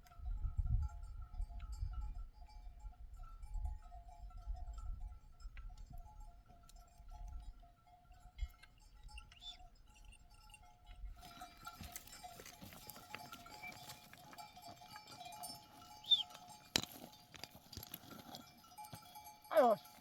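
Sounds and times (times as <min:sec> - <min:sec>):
sheep bells clinking: 0:00.0 - 0:20.0
high-pitched chirp: 0:16.0 - 0:16.3.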